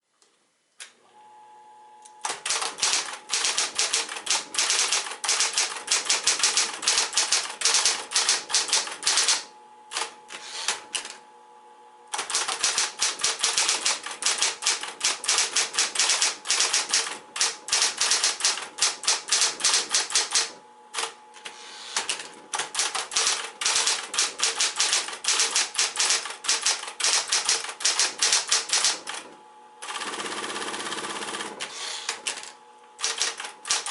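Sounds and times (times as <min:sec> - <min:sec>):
electric motor hum: 0:01.0 - 0:33.9
typewriter key strikes: 0:02.3 - 0:09.4, 0:12.2 - 0:21.1, 0:22.6 - 0:29.2, 0:32.2 - 0:33.9.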